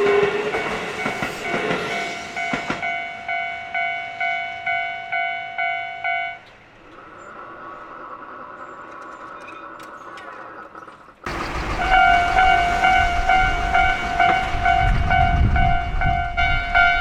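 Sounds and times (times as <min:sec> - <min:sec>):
level-crossing warning bell ringing: 0:00.0 - 0:06.6, 0:11.3 - 0:17.0.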